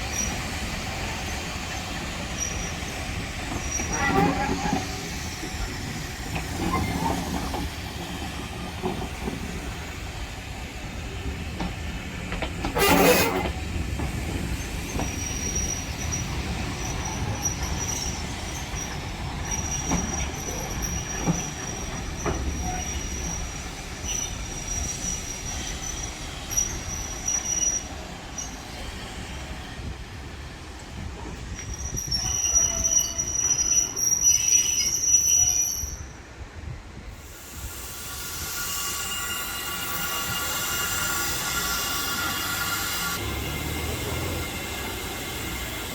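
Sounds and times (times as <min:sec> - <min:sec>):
train rumbling past: 0:00.0 - 0:45.9
high wheel squeal: 0:01.2 - 0:07.7, 0:12.7 - 0:13.6, 0:14.6 - 0:28.9, 0:31.6 - 0:36.2, 0:37.6 - 0:45.9.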